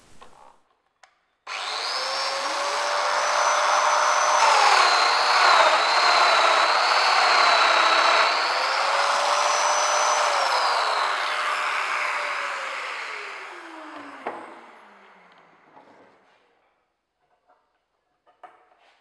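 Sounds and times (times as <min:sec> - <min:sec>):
joiner motor whining: 0:01.5 - 0:15.8.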